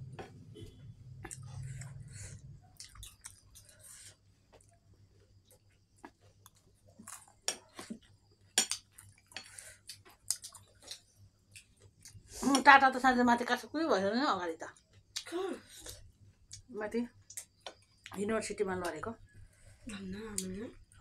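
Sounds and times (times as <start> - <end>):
close-up chewing of food: 0.0 - 12.3.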